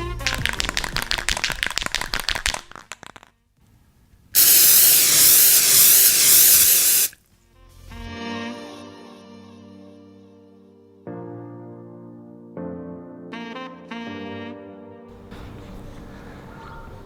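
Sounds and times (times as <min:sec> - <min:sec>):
paint spray gun hissing: 0:04.4 - 0:07.2.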